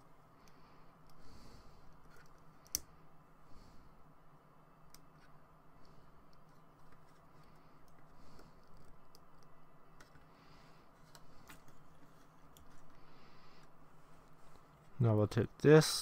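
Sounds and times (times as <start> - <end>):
soft rustles: 13.9 - 15.0.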